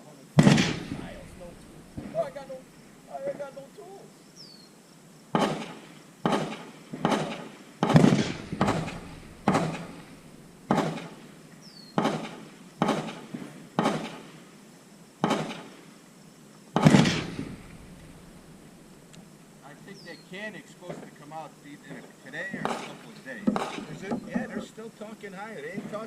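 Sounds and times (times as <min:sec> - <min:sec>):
gunshots with echo: 0:00.4 - 0:02.6, 0:05.4 - 0:11.2, 0:12.0 - 0:14.2, 0:16.8 - 0:18.6, 0:22.5 - 0:24.2.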